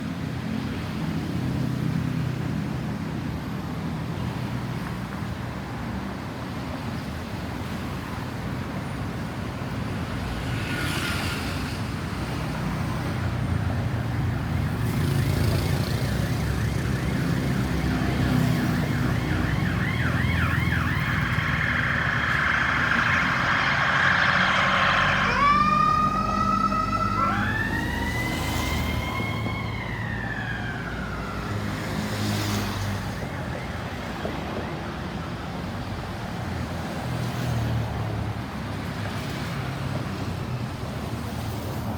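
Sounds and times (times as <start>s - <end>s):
low traffic rumble: 11.7s - 41.9s
ambulance siren: 13.8s - 36.0s.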